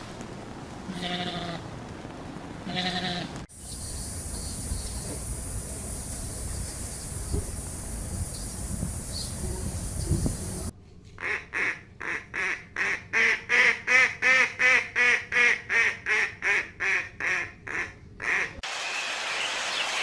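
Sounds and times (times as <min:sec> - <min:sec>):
outdoor background noise: 0:00.0 - 0:20.0
duck quacking: 0:11.2 - 0:18.6.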